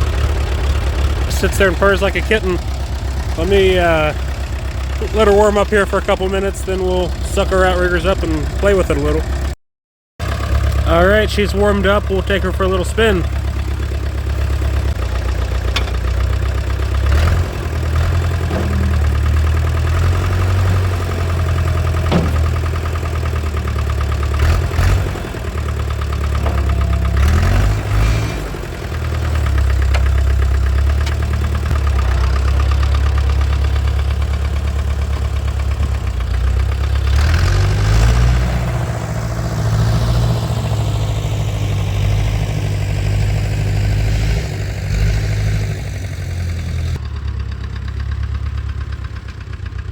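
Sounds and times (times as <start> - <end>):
diesel engine running: 0.0 - 9.6, 10.2 - 49.9
metal clanks: 15.6 - 16.2, 18.1 - 23.5, 25.0 - 32.2.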